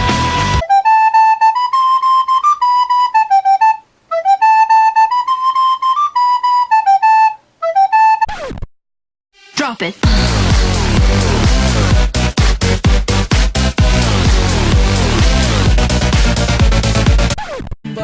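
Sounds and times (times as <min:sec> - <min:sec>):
flute-like instrument melody: 0:00.0 - 0:08.3.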